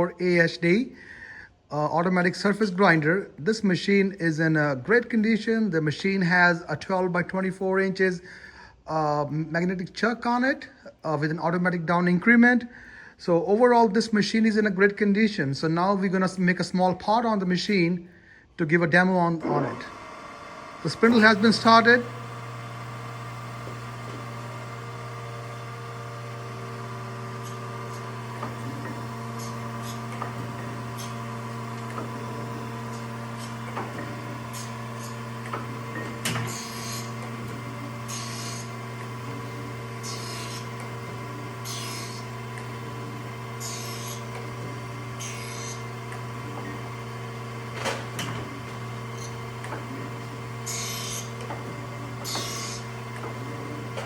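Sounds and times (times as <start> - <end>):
grinder humming: 18.9 - 54.0
grinding wheel hissing bursts: 19.4 - 54.0.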